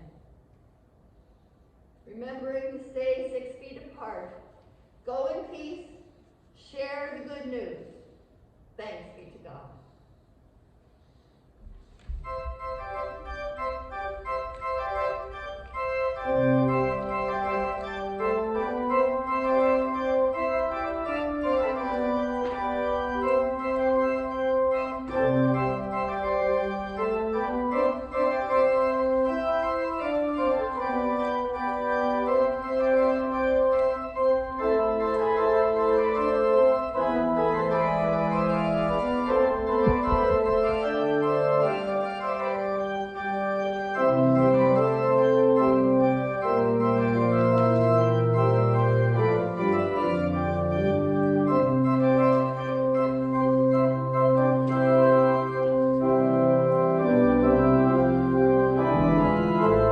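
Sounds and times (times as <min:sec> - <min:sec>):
church organ playing: 0:12.1 - 0:59.9.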